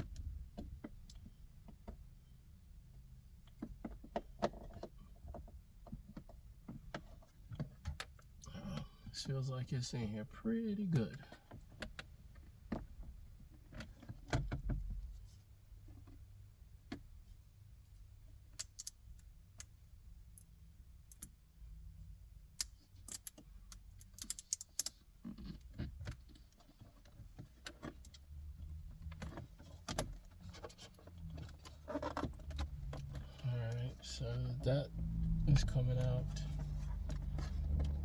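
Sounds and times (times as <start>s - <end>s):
low rumble: 32.6s - 38.0s.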